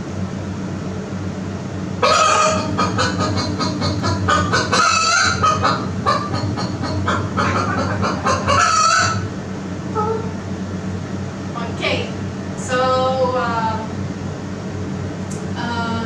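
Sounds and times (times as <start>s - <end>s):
hens clucking and squawking: 2.0s - 9.4s.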